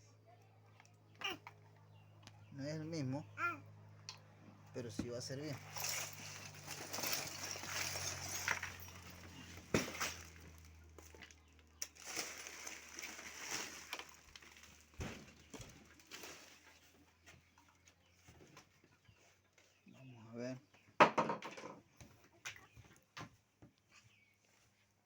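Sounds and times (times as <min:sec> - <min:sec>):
electronic parts clicking and rustling: 0:05.4 - 0:10.8, 0:11.8 - 0:14.9.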